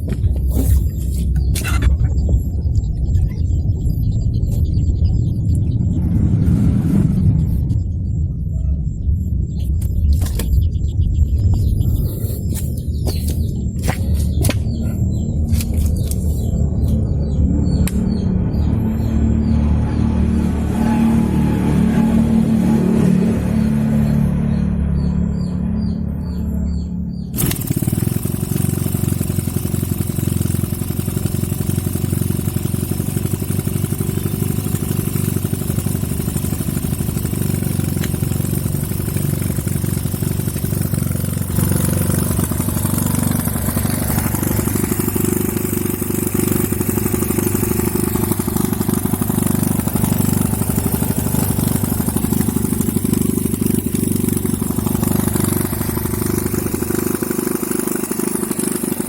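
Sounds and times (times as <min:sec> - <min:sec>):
small engine running: 0:00.0 - 0:08.2, 0:09.4 - 0:59.0.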